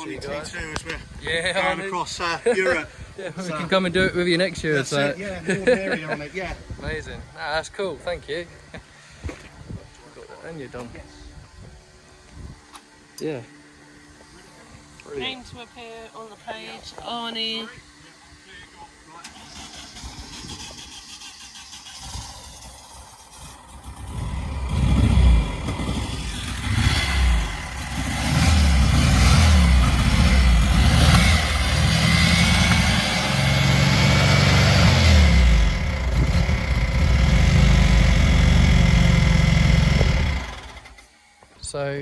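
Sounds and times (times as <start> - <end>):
air-cooled engine revving: 19.2 - 41.2.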